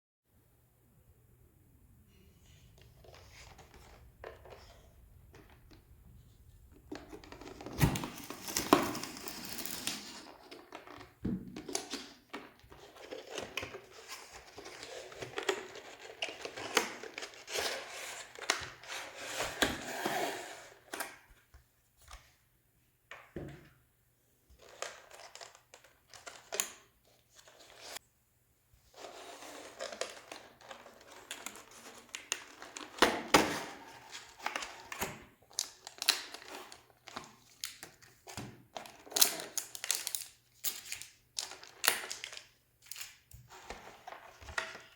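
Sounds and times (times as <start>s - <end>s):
cardboard being handled: 6.8s - 11.1s
plastic wrap tearing and crinkling: 7.2s - 10.6s.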